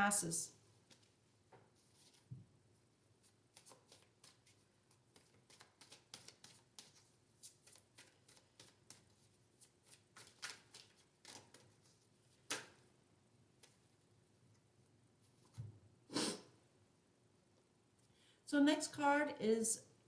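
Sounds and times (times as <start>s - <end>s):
cards being shuffled: 0.9s - 1.1s, 1.8s - 2.3s, 3.2s - 12.8s.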